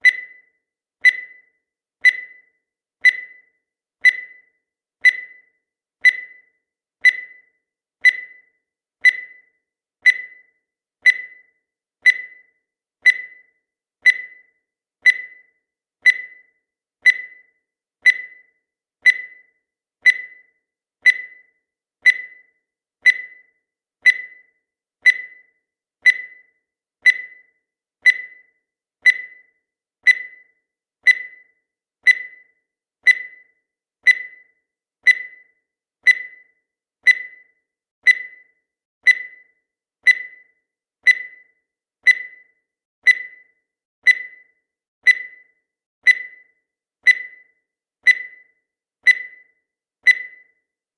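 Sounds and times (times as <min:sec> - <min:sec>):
short high timer blips: 0:32.1 - 0:32.5, 0:33.1 - 0:33.5, 0:34.1 - 0:34.5, 0:35.1 - 0:35.5, 0:36.1 - 0:36.5, 0:37.1 - 0:37.5, 0:38.1 - 0:38.5, 0:39.1 - 0:39.5, 0:40.1 - 0:40.5, 0:41.1 - 0:41.5, 0:42.1 - 0:42.5, 0:43.1 - 0:43.5, 0:44.1 - 0:44.5, 0:45.1 - 0:45.5, 0:46.1 - 0:46.5, 0:47.1 - 0:47.5, 0:48.1 - 0:48.5, 0:49.1 - 0:49.5, 0:50.1 - 0:50.5.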